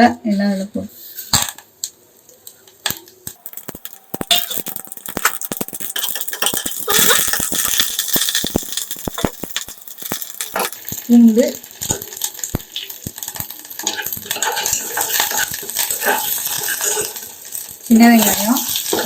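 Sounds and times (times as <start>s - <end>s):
spices crackling in hot oil: 2.8s - 19.0s
metal spoon clinking on pan: 3.4s - 11.1s.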